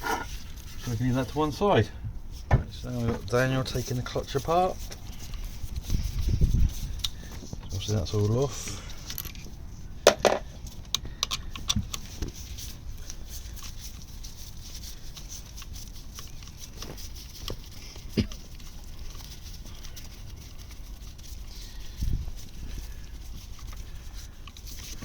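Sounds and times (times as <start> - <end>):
hand tools clicking on metal: 10.1 - 12.0.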